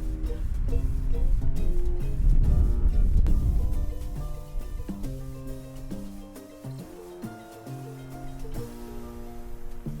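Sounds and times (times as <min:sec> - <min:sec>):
loud low rumble: 0:00.0 - 0:03.9
acoustic guitar music: 0:00.0 - 0:10.0.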